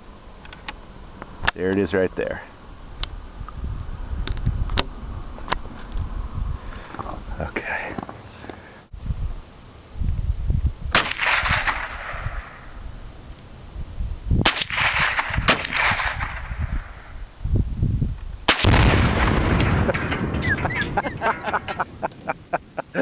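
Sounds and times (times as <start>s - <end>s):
explosive target blast: 10.9s - 12.6s, 14.4s - 17.1s, 18.5s - 21.6s
rifle shots: 10.9s - 12.6s, 14.4s - 17.0s, 18.5s - 21.0s.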